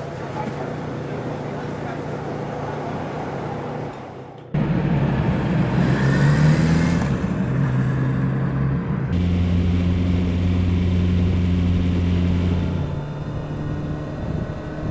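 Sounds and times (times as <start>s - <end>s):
motorcycle engine and exhaust: 4.6s - 14.9s.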